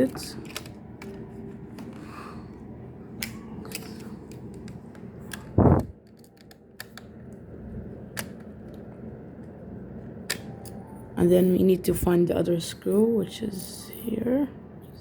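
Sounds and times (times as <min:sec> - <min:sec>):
laptop parts clicking and tapping: 0:00.1 - 0:02.1, 0:03.2 - 0:07.4.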